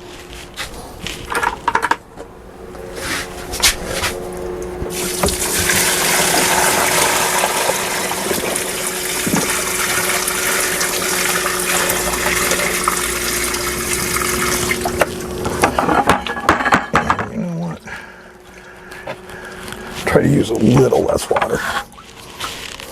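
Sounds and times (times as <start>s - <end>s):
water pouring into tub: 3.0s - 15.8s.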